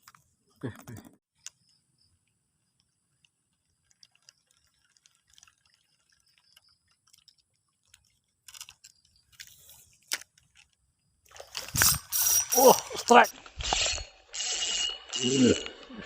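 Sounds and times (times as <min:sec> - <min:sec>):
fishing reel ticking: 0:02.8 - 0:09.7, 0:11.3 - 0:15.9.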